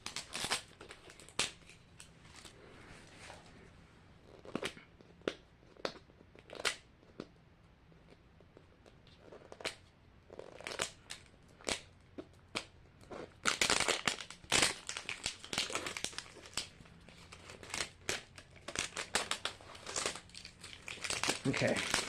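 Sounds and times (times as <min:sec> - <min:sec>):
plastic wrapper crinkling: 0:00.0 - 0:02.6, 0:10.4 - 0:11.9, 0:12.5 - 0:22.0.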